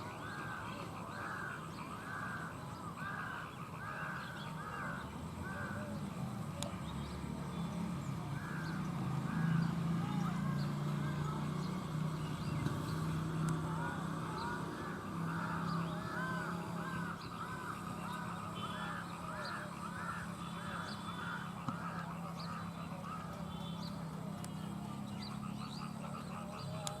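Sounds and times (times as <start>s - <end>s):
mynas calling: 7.6s - 27.0s.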